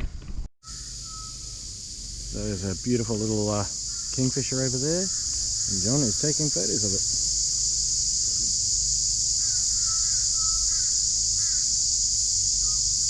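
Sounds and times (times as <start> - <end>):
shrill insect chorus: 0.6 - 13.0
bird calling: 0.7 - 7.0, 9.4 - 11.7.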